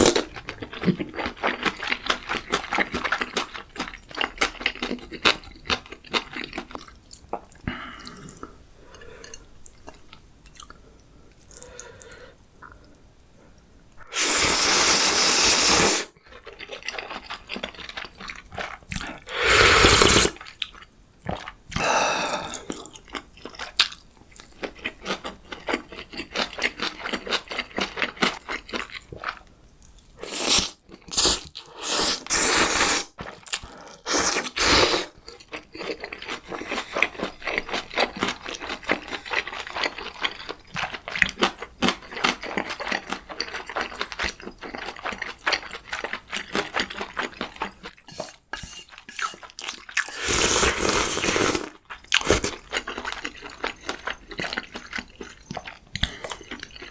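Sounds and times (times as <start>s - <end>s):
close chewing with wet smacks: 16.2s - 19.2s, 22.6s - 30.0s, 35.2s - 50.1s, 51.7s - 56.9s.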